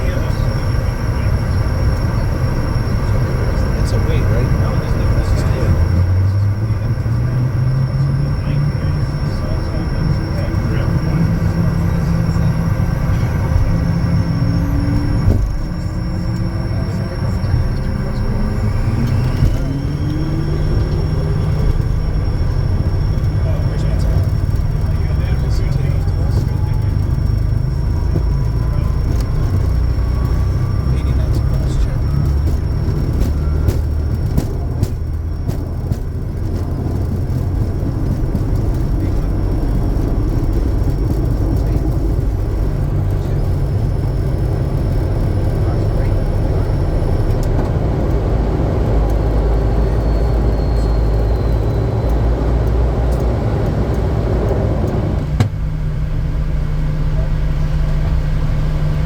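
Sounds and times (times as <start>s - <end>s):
faint high whine: 0.0s - 35.0s
jet engines rumbling: 0.0s - 59.0s.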